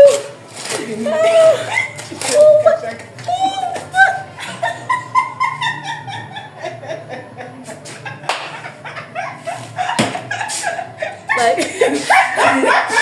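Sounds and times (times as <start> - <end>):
woman squealing and laughing: 1.0 - 6.2.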